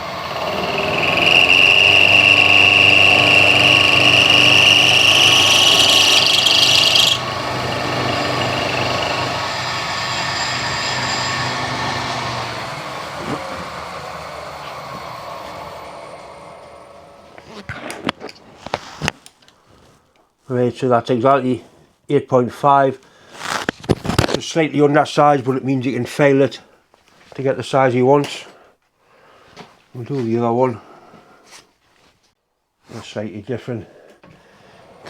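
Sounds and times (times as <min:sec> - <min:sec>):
milling machine running: 0:00.0 - 0:17.0
milling machine cutting whine: 0:00.0 - 0:17.2.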